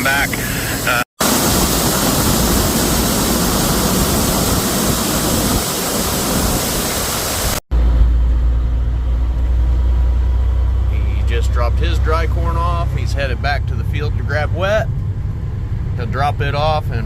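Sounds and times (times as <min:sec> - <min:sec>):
loud rushing noise: 0:00.0 - 0:08.0
truck engine droning: 0:07.7 - 0:17.0.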